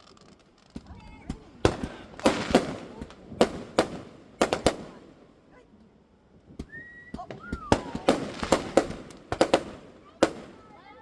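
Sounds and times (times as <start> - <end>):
fireworks bangs: 0.7 - 5.6, 6.4 - 11.0
whistling firework tones: 6.6 - 9.6.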